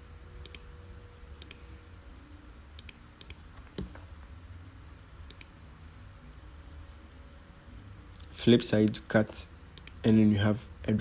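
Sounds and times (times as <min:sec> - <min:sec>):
low steady hum: 0:00.0 - 0:11.0
computer mouse clicking: 0:00.4 - 0:00.7, 0:01.4 - 0:01.7, 0:02.8 - 0:04.1, 0:05.3 - 0:05.6, 0:09.8 - 0:10.0.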